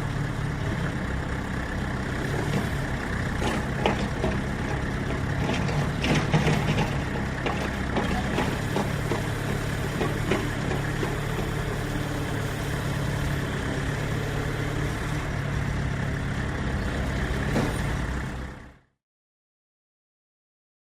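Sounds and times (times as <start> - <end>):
heavy machine engine idling: 0.0 - 18.8.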